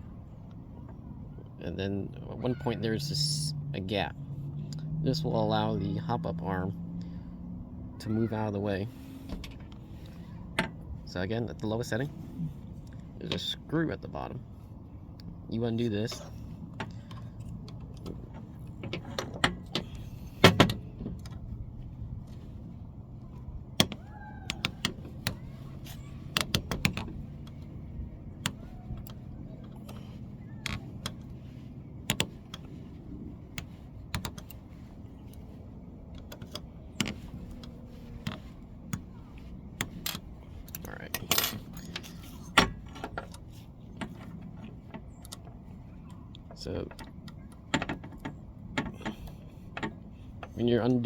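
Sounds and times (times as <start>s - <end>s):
low steady hum: 0.0s - 51.0s
small clicks and metallic taps: 23.2s - 51.0s.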